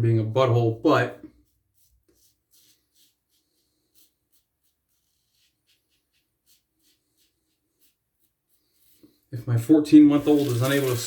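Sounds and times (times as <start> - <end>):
razor scraping stubble: 10.1 - 11.0.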